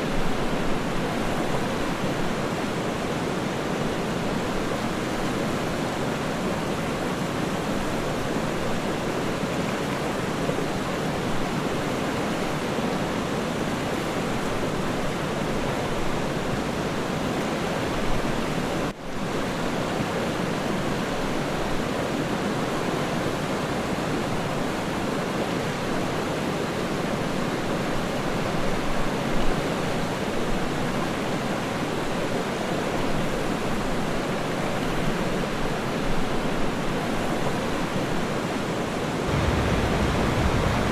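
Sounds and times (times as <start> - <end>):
waterfall rushing: 38.4 - 40.9.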